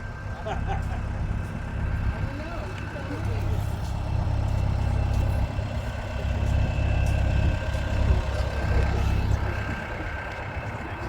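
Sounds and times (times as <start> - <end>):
heavy machine engine rumbling: 0.0 - 11.0.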